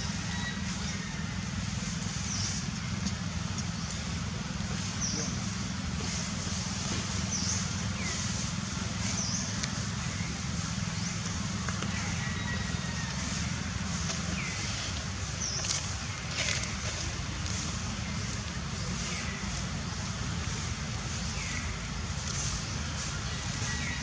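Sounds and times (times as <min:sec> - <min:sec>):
low rumble and hiss: 0:00.0 - 0:24.0.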